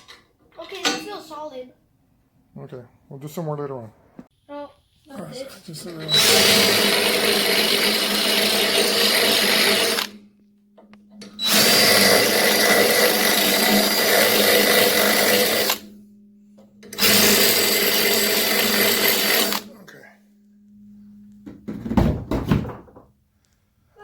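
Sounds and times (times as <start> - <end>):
power drill whining: 5.8 - 10.2, 11.2 - 15.9, 16.8 - 19.7.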